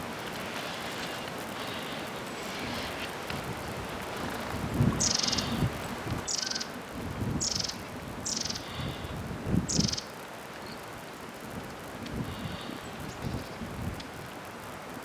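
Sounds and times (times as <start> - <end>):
bird buzzy trilled calls: 5.0 - 6.8, 7.4 - 9.0, 9.7 - 10.8.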